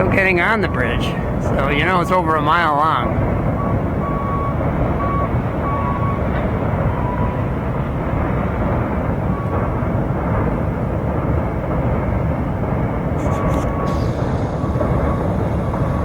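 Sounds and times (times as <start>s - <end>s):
train wheels rumbling on rails: 0.0s - 16.0s
high-pitched wheel squeals: 13.2s - 16.0s.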